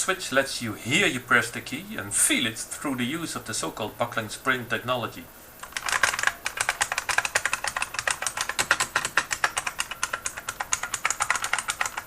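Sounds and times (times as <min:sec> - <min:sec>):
clicky keyboard typing: 0:05.7 - 0:12.0.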